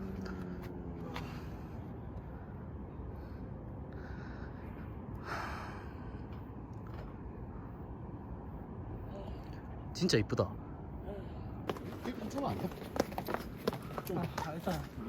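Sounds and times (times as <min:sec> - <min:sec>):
person breathing heavily: 0:00.1 - 0:06.5.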